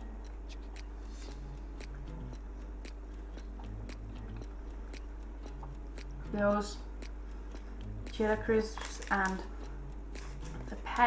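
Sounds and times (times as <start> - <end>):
person chewing crunchy food: 8.7 - 10.8.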